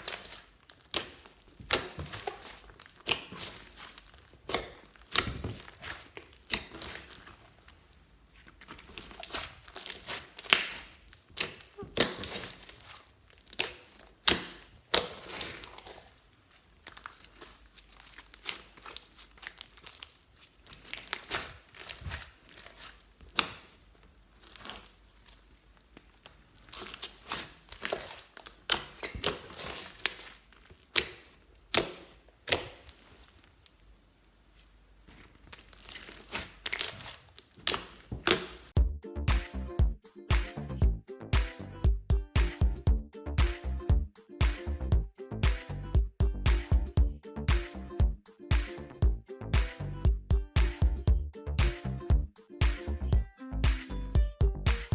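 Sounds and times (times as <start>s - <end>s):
slime squishing with sticky pops: 0.0s - 38.8s.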